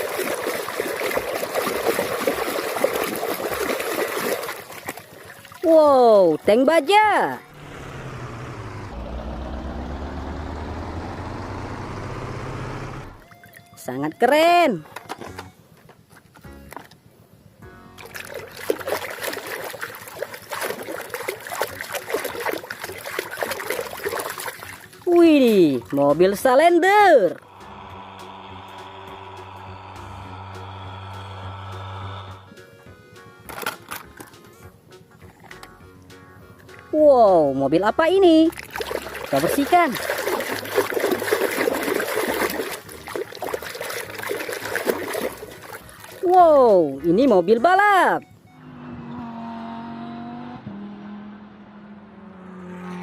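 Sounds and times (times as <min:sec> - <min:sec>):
water splashing and trickling: 0:00.0 - 0:12.0, 0:13.1 - 0:14.4, 0:17.9 - 0:27.6, 0:33.5 - 0:48.2.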